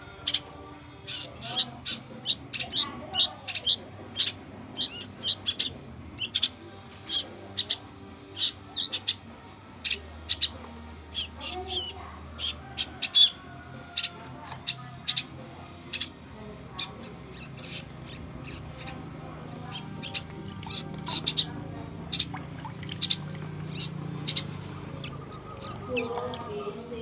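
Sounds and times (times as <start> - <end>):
young songbirds chirping: 0.2 - 27.0.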